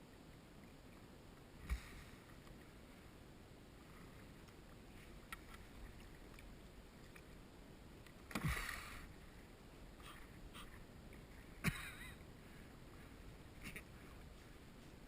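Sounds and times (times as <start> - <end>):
faint water sounds: 0.0 - 15.0
water splash: 8.3 - 9.0.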